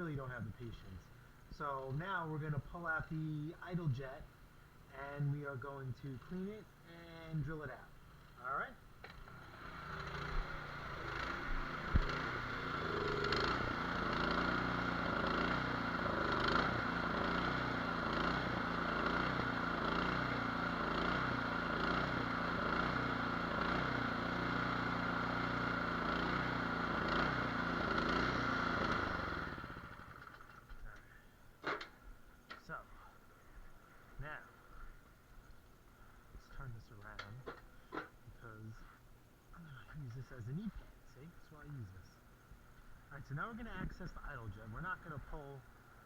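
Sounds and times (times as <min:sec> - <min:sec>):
snowblower engine running: 0:08.0 - 0:31.0.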